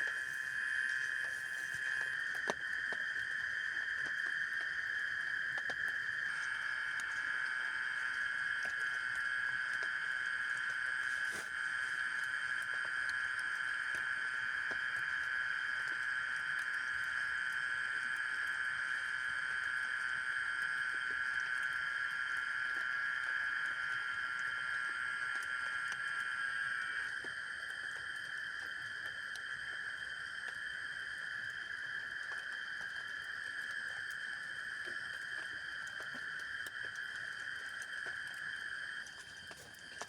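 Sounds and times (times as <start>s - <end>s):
raindrops pattering on a tent: 0.0s - 4.7s, 10.6s - 16.7s, 31.4s - 40.0s.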